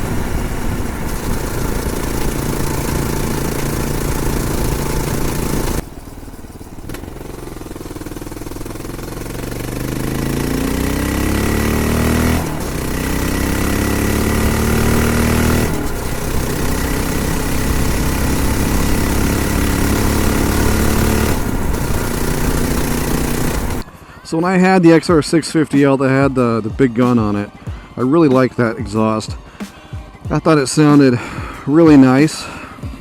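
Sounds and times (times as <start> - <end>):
motorcycle engine pulling: 0.0 - 23.9.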